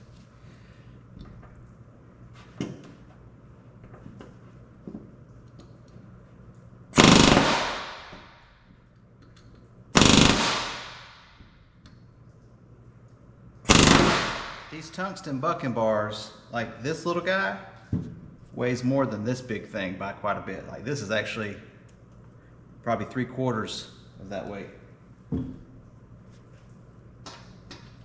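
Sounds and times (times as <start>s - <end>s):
pneumatic rivet gun hammering metal: 7.0s - 8.3s, 13.7s - 14.6s.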